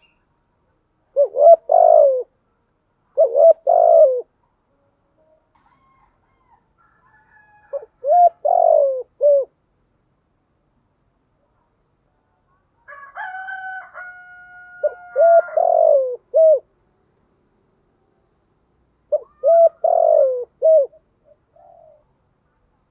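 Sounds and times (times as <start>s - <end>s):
dove cooing: 1.1s - 2.4s, 3.1s - 4.4s, 7.3s - 9.6s, 14.5s - 16.7s, 19.1s - 22.2s.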